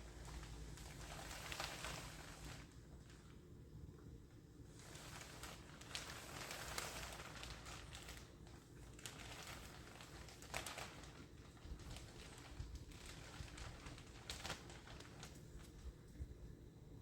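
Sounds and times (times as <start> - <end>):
plastic sheeting rustling: 0.0 - 17.0.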